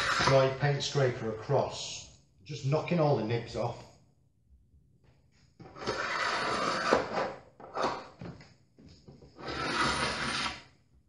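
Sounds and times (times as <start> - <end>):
metal scraper rasping on painted wood: 9.4 - 10.6.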